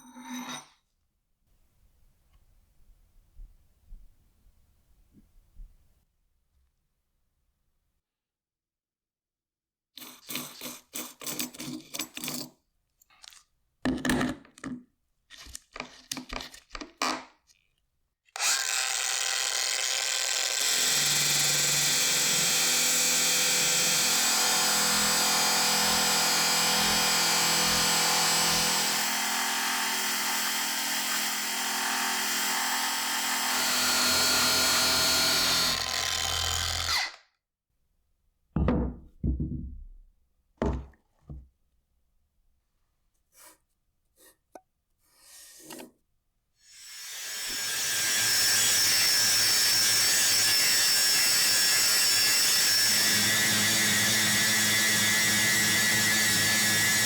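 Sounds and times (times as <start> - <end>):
electric power tool running: 18.4 - 37.2, 46.7 - 57.0.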